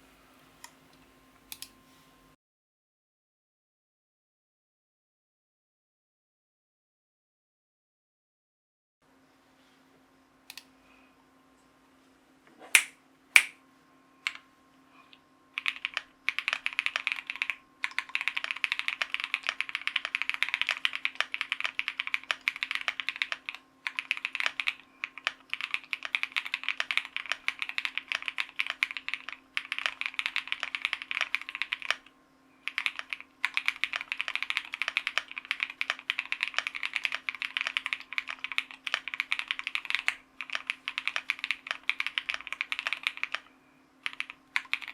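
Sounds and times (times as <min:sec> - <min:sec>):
faint steady hum: 0:00.0 - 0:02.4, 0:09.0 - 0:44.9
mechanical keyboard typing: 0:15.6 - 0:44.9.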